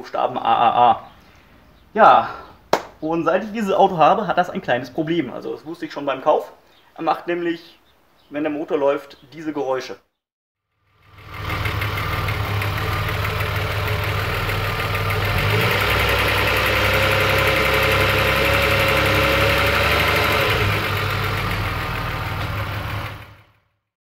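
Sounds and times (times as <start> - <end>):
car engine idling with rattle: 10.8 - 23.6.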